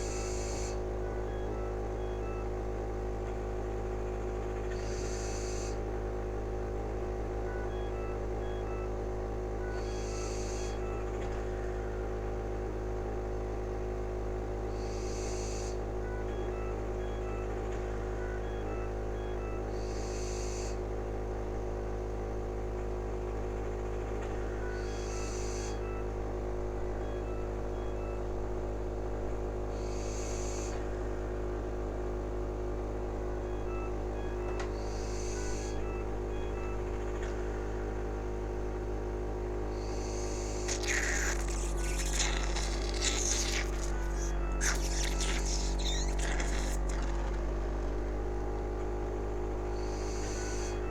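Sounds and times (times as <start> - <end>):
machine humming: 39.7 - 50.9.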